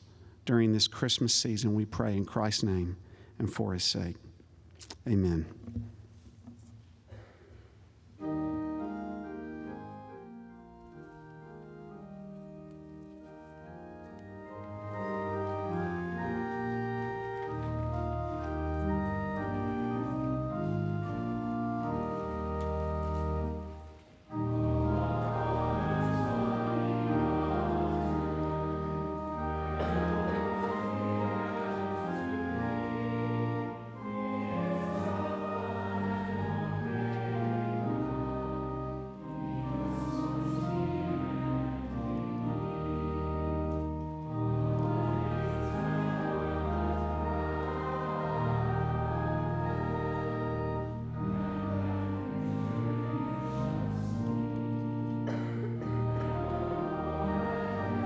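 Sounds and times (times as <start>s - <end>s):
choir singing a hymn: 8.2s - 58.0s
organ playing: 8.2s - 58.0s.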